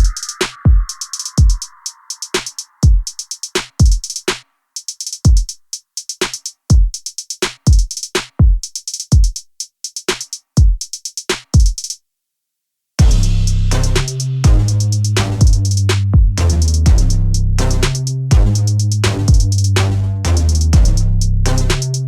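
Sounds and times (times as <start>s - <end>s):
drum machine beat: 0.0s - 12.0s, 13.0s - 22.0s
deep bass line: 13.0s - 22.0s.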